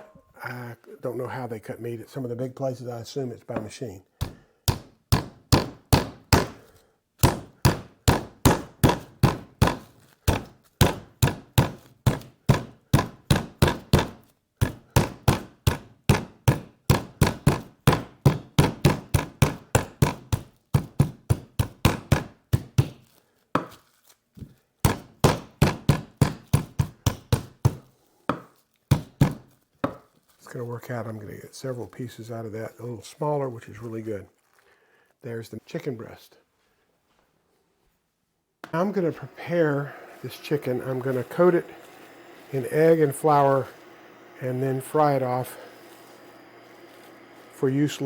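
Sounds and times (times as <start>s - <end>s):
meat being pounded: 4.2s - 23.8s, 24.8s - 30.1s.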